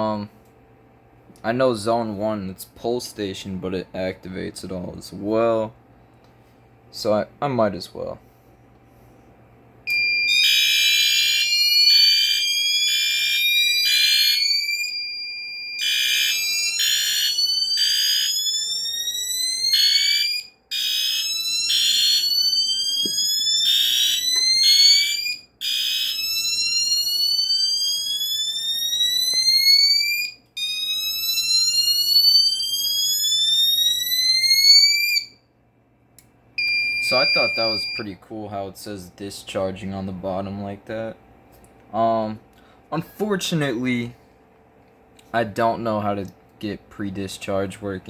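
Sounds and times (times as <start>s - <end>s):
pulsing alarm horn: 9.9s - 35.2s, 36.6s - 38.0s
slow-whoop alarm tone: 9.9s - 35.4s, 36.6s - 38.0s
steady high beep: 36.6s - 38.0s.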